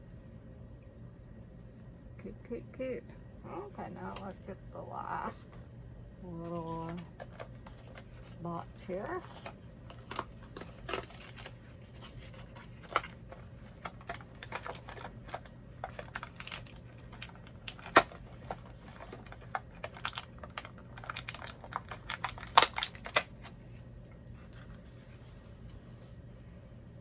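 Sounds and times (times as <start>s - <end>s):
packaging clicks and crinkles: 6.4s - 26.2s.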